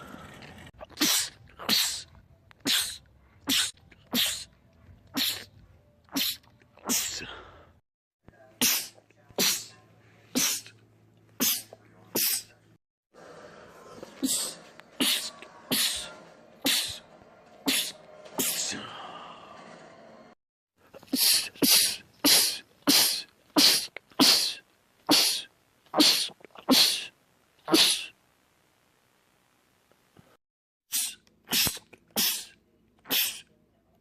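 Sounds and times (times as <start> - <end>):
men sneezing: 21.0 - 27.1, 27.7 - 28.1, 30.9 - 33.5.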